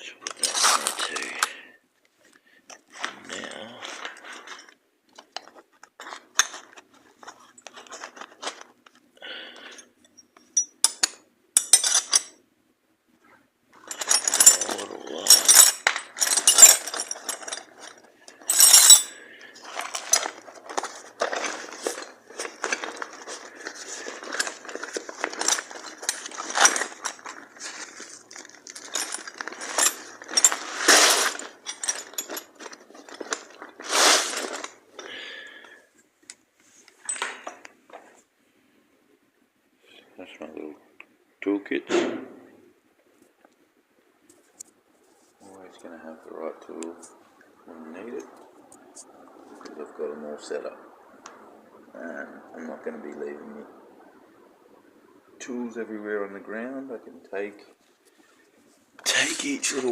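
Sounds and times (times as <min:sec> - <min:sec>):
metal hand tools clattering: 0:00.2 - 0:01.6, 0:10.4 - 0:12.4, 0:13.8 - 0:34.8.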